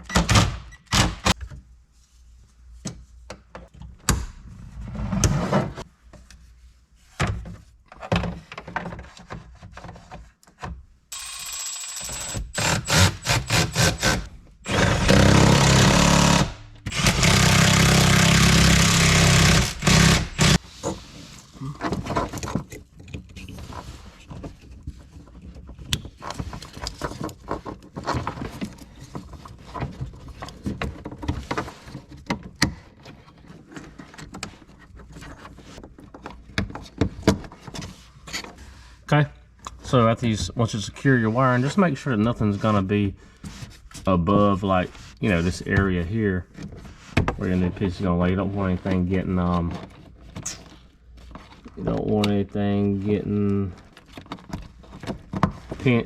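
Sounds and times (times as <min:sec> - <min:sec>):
power driver running: 0:11.2 - 0:20.6.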